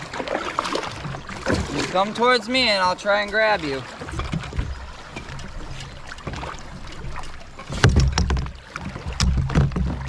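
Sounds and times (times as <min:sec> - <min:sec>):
paddle strokes in water: 0:00.0 - 0:10.0
knocks against hull: 0:00.6 - 0:02.0, 0:03.9 - 0:10.0.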